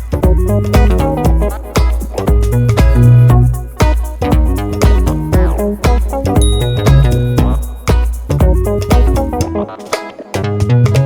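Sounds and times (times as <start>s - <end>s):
upbeat instrumental music: 0.0s - 11.0s.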